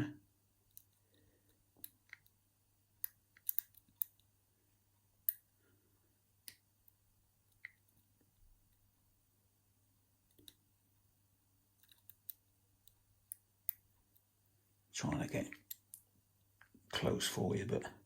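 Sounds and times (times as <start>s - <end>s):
lock pick clicks: 3.0s - 4.2s.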